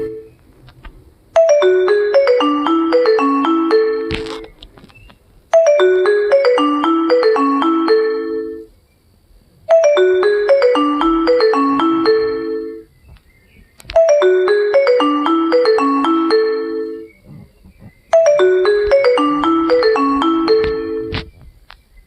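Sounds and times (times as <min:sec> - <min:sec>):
marimba-like phone ringtone: 0:00.0 - 0:00.3, 0:01.4 - 0:04.5, 0:05.5 - 0:08.7, 0:09.7 - 0:12.9, 0:14.0 - 0:17.1, 0:18.1 - 0:21.3.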